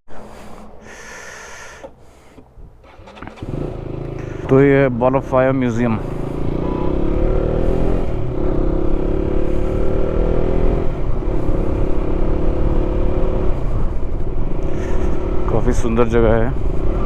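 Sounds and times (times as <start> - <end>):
motorcycle engine accelerating: 0.2 - 17.0
wind rumble on microphone: 7.6 - 17.0.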